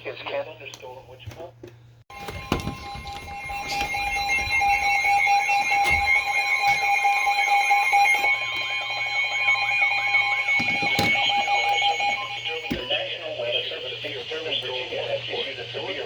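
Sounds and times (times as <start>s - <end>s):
warbling alert tone: 2.1s - 13.0s
steady alarm tone: 2.1s - 16.0s.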